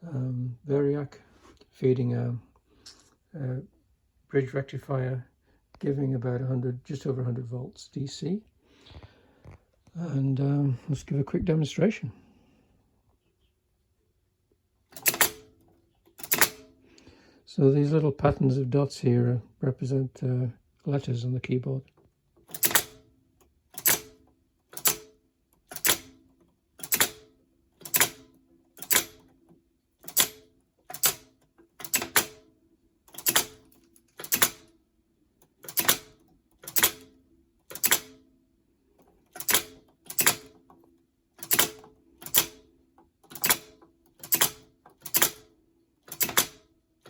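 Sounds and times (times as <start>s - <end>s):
paper tape perforator clacking: 22.5s - 23.0s, 23.8s - 25.1s, 25.7s - 26.2s, 26.8s - 29.2s, 30.0s - 32.4s, 33.1s - 33.6s, 34.2s - 34.7s, 43.3s - 45.4s, 46.1s - 46.6s.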